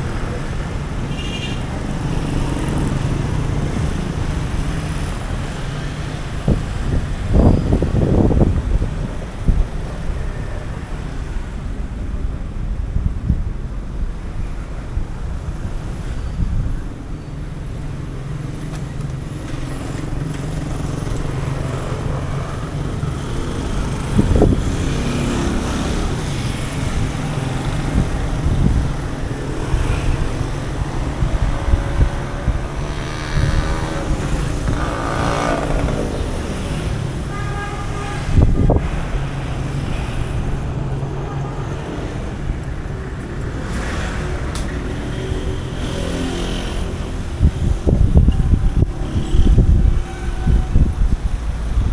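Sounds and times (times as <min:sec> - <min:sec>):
rumble of street traffic: 0:00.0 - 0:51.9
vehicle passing close: 0:19.4 - 0:37.3.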